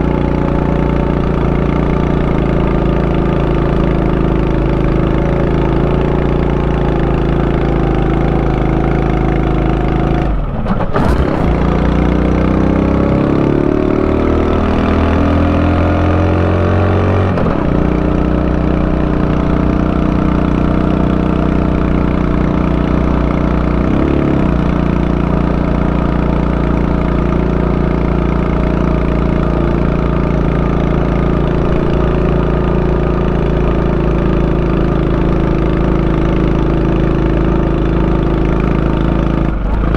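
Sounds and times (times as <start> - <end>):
motorcycle engine running: 17.5 - 39.9.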